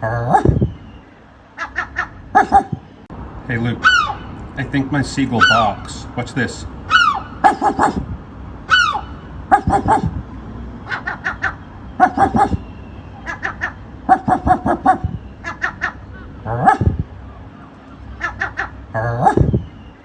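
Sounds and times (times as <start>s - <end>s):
seagull barking calls: 0.0s - 3.0s, 3.8s - 4.4s, 5.3s - 6.0s, 6.8s - 10.2s, 10.8s - 17.1s, 18.1s - 20.0s.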